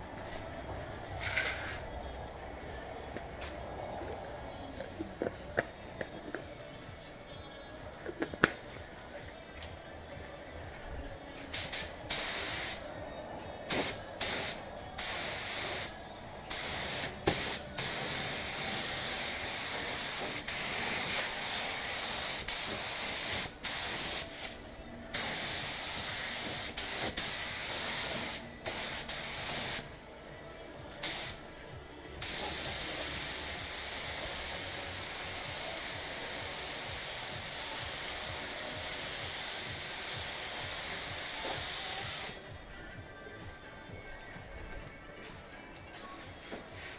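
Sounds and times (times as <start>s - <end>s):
paint spray gun hissing: 11.5s - 12.9s, 13.7s - 24.5s, 25.1s - 29.9s, 31.0s - 31.4s, 32.2s - 42.4s.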